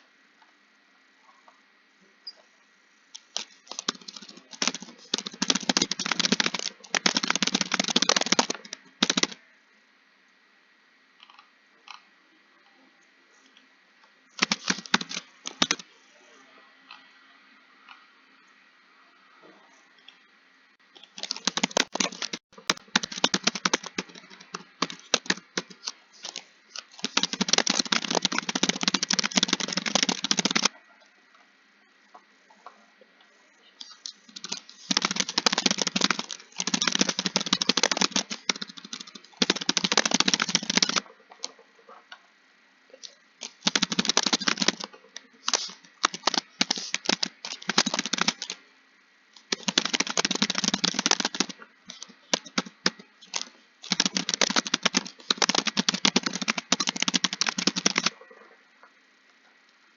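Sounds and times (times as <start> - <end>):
fast keyboard typing: 3.2 - 9.4, 14.4 - 15.9, 21.0 - 30.7, 33.8 - 41.1, 43.4 - 48.6, 49.4 - 58.1.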